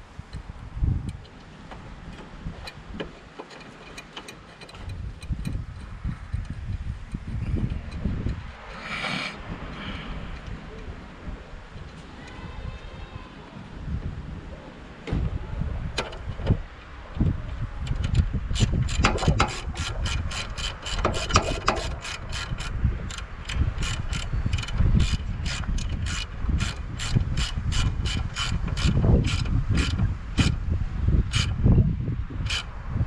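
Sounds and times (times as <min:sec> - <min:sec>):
ratchet wrench clicking: 0:17.8 - 0:30.6, 0:32.4 - 0:32.7
tools knocking: 0:18.6 - 0:22.6.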